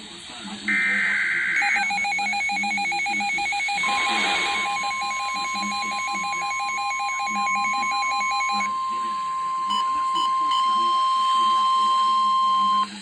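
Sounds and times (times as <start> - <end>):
electronic warble of short beeps: 0.7 - 9.0
steady warning alarm tone: 0.7 - 13.0.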